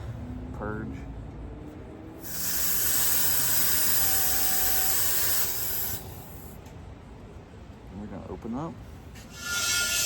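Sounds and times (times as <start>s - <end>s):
gas hissing from hose: 2.2s - 6.6s.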